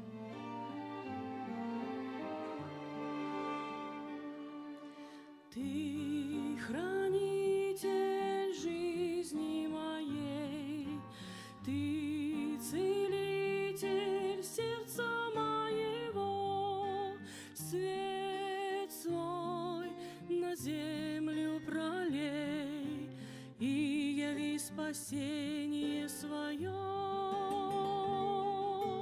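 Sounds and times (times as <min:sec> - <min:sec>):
instrumental accompaniment: 0:00.0 - 0:05.6
person singing with vibrato: 0:05.5 - 0:29.0.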